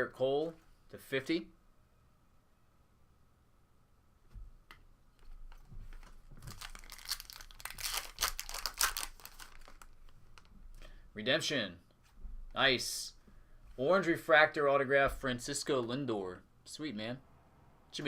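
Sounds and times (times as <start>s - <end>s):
foil wrapper tearing and crinkling: 6.4s - 10.5s.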